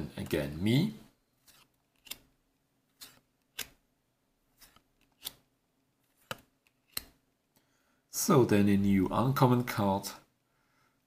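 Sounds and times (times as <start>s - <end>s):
trading cards clicking and snapping: 1.5s - 2.3s, 3.0s - 3.8s, 4.6s - 5.4s, 6.2s - 7.2s.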